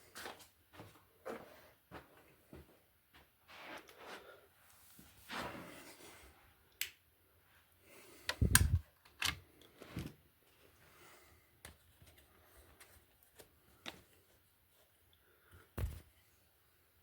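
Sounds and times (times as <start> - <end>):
plugs clicking into socket: 8.3 - 9.4.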